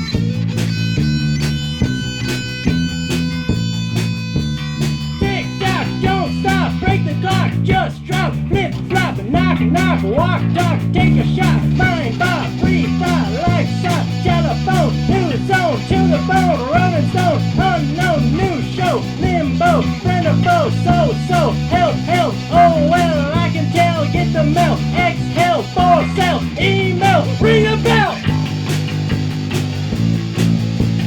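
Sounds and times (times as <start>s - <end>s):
bending lead guitar notes: 0.0s - 31.0s
rock band playing: 0.0s - 31.0s
drum hits: 24.6s - 31.0s.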